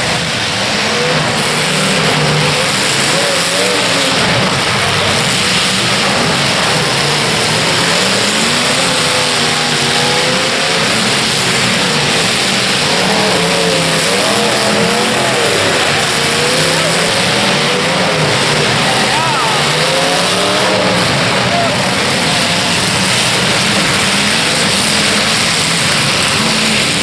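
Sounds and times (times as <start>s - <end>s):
car engines revving hard: 0.0s - 27.0s.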